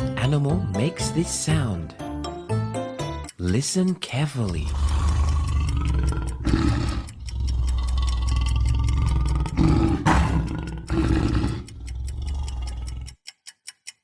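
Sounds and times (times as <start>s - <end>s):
lion roaring: 4.6s - 13.1s.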